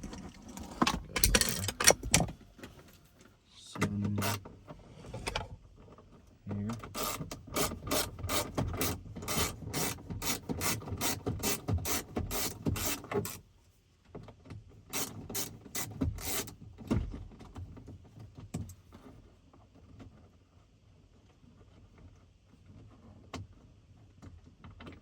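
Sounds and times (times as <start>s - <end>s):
hand ratchet clicking: 6.9s - 13.4s, 15.0s - 16.5s.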